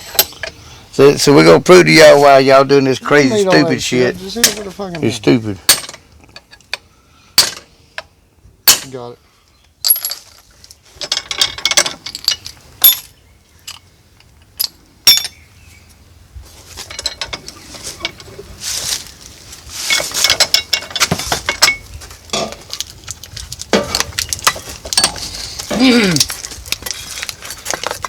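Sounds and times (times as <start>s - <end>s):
metal tools clinking and clanking: 0.0s - 0.6s, 5.7s - 6.8s, 9.8s - 15.4s, 16.8s - 18.3s, 19.8s - 22.9s, 23.7s - 28.0s.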